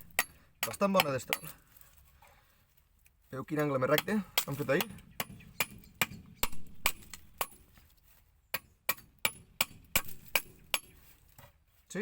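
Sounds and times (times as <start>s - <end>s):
hatchet chopping wood: 0.0s - 1.6s, 3.6s - 7.8s, 8.5s - 11.0s.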